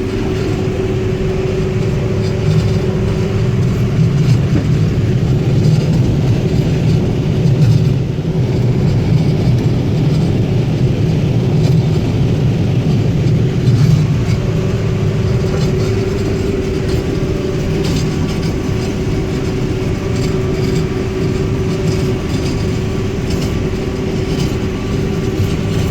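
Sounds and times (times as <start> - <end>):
combine harvester drone: 0.0 - 25.9
high machine whine: 0.0 - 25.9.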